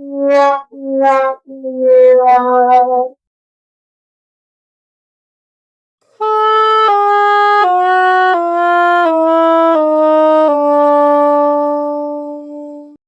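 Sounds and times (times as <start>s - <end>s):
sad trombone sound effect: 0.0s - 3.1s.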